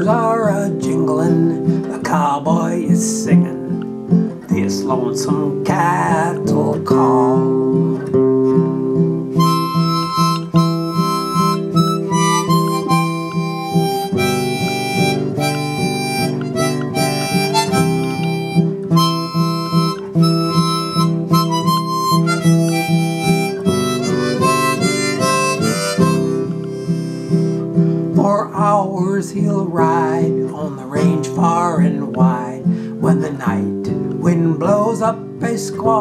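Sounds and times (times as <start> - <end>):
strummed acoustic guitar: 0.0 - 36.0
harmonica melody: 7.1 - 33.0.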